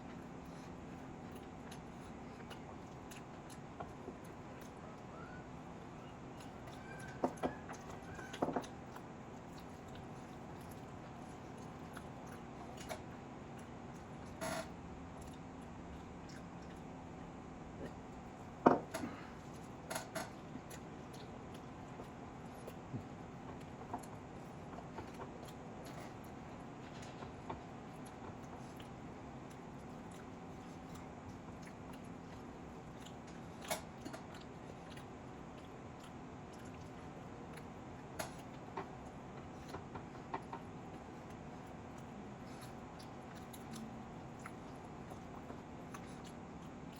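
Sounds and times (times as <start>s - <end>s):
faint background hum: 0.0s - 46.9s.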